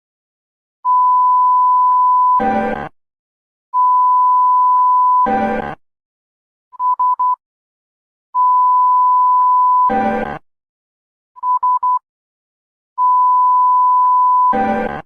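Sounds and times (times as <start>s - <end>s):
short beeps: 0.9s - 2.4s, 3.8s - 5.3s, 8.4s - 10.0s, 11.4s - 12.0s, 13.0s - 14.7s
harsh buzz: 2.4s - 2.9s.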